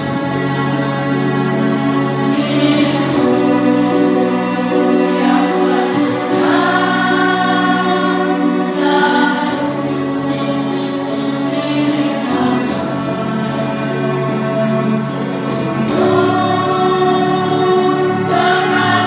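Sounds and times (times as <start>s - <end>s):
children's choir singing: 0.0s - 19.0s
musical accompaniment: 0.0s - 19.0s.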